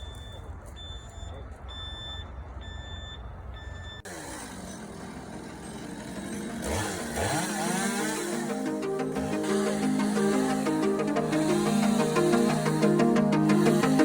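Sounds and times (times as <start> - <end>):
reversing alarm beeping: 0.0 - 4.1, 6.6 - 14.0
truck engine running: 3.5 - 14.0
electronic music with pitch glides: 6.7 - 14.0.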